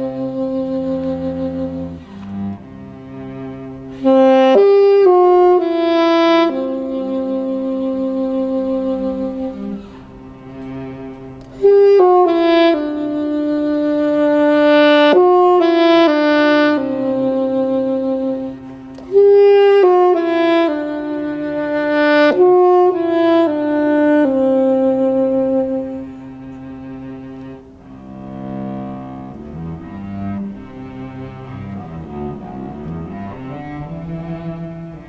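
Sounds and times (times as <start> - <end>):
cello sustained low notes: 0.0 - 35.0
saxophone playing slow melody: 0.0 - 35.0.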